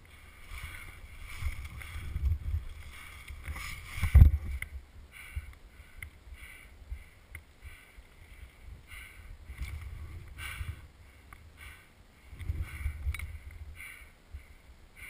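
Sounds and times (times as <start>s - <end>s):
footsteps crunching through snow: 0.0s - 4.6s
wind rumble on microphone: 0.0s - 7.1s, 8.2s - 11.6s, 12.2s - 14.5s.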